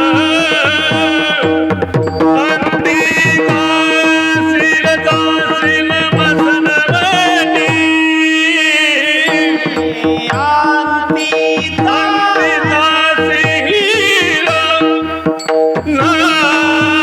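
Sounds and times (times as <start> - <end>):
man singing devotional melody: 0.0 - 17.0.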